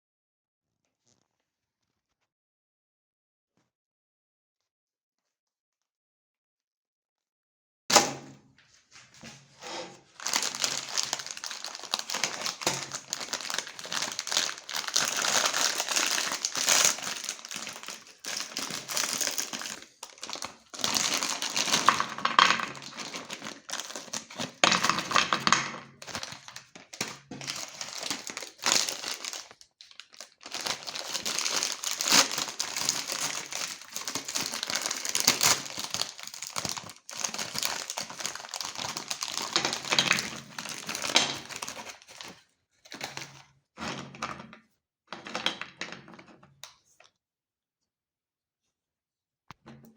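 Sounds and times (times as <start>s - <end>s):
meat grinder crunching cookies: 10.0s - 43.4s.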